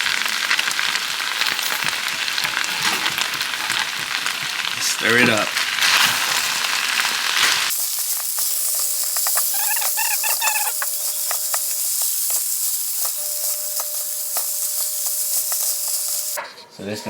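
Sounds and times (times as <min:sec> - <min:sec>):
food sizzling in a pan: 0:00.0 - 0:16.4
short squeaky chirps: 0:08.4 - 0:16.4.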